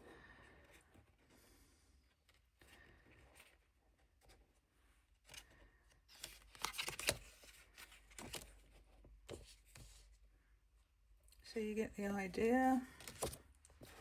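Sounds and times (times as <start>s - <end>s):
cards being flipped: 6.1s - 8.6s, 13.0s - 13.9s.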